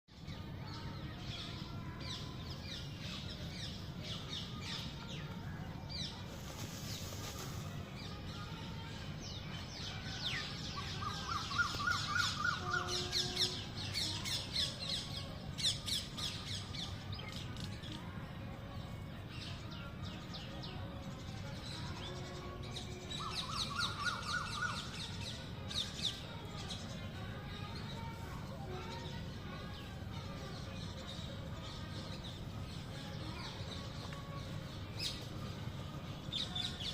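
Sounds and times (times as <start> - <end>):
small birds chirping: 0.1 - 18.2.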